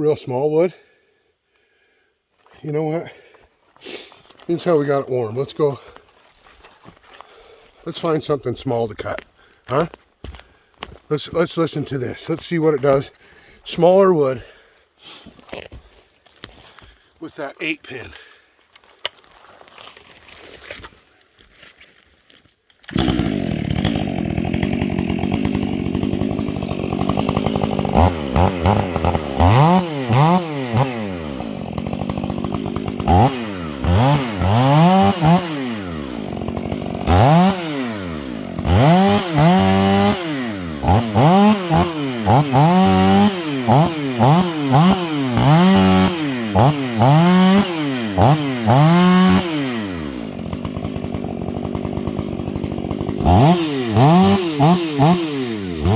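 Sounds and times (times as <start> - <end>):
chainsaw revving and cutting wood: 22.8 - 55.9.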